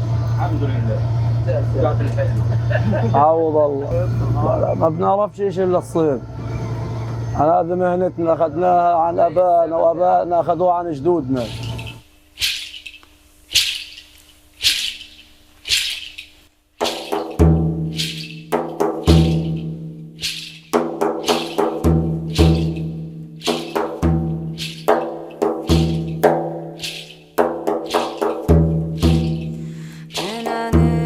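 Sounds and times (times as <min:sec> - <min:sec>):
short hissing swishes: 0:11.5 - 0:30.5
background music with bass: 0:16.8 - 0:31.0
wood-block-like percussive hits: 0:16.8 - 0:31.0.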